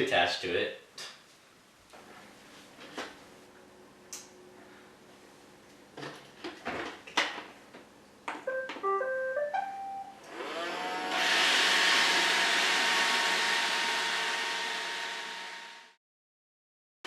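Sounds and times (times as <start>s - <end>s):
melody of beeps: 8.5s - 10.2s
vacuum motor whirring: 10.2s - 15.9s.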